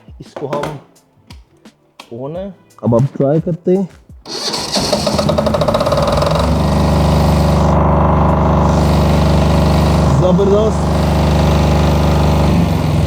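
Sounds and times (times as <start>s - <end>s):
generator engine cranking and running: 4.3s - 13.0s.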